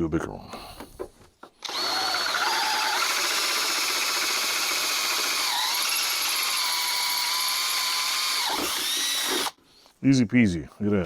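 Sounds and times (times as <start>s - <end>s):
cordless drill boring through metal: 1.6s - 9.6s.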